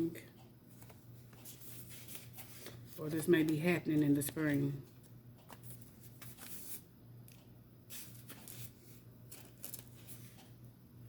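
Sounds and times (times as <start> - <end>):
low steady hum: 0.0 - 11.0
cards rustling: 0.8 - 6.8, 7.9 - 10.5.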